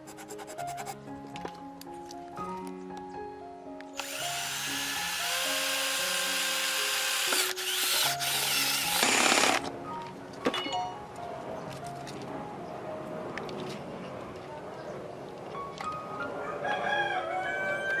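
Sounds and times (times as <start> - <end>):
background music: 0.0 - 18.0
small electric motor whirring: 4.0 - 9.6.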